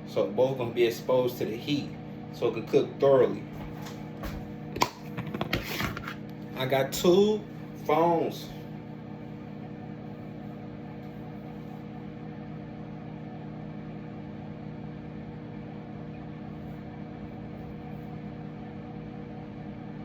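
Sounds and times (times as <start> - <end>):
microwave oven humming: 0.0 - 20.0.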